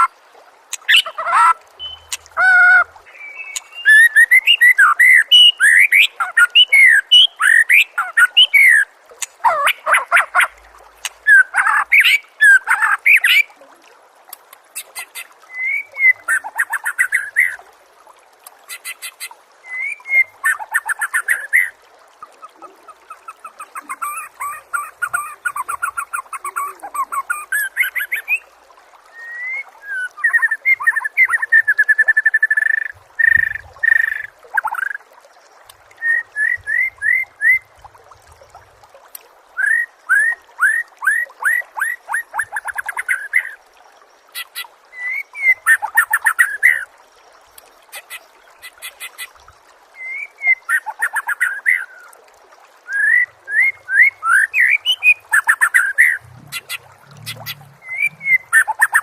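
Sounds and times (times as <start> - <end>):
songbird whistling and trilling: 1.8 - 8.8, 52.9 - 59.0.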